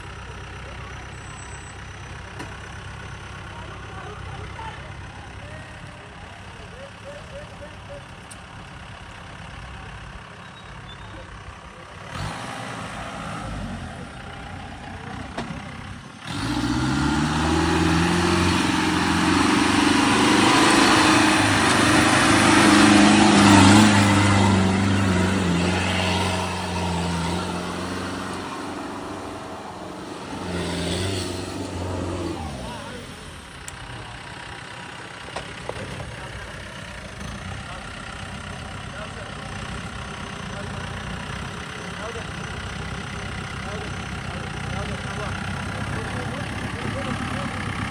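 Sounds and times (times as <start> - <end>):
off-road vehicle engine revving: 0.0 - 47.9.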